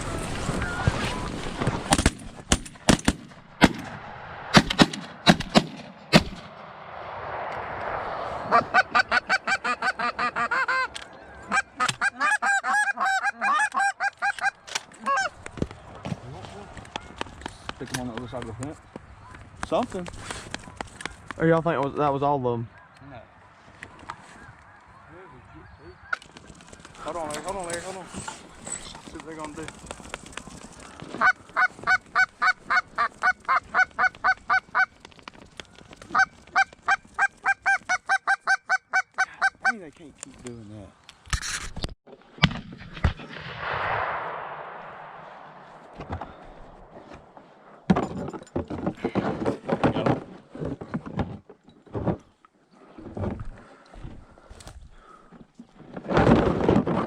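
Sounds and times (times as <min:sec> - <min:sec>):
goose honking: 0:08.4 - 0:15.3, 0:31.2 - 0:34.9, 0:36.1 - 0:39.8.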